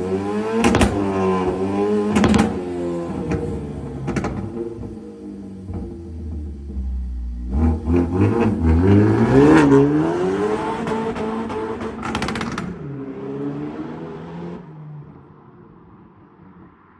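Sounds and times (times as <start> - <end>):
exhaust crackles: 0.0 - 11.3
car engine revving: 0.0 - 14.7.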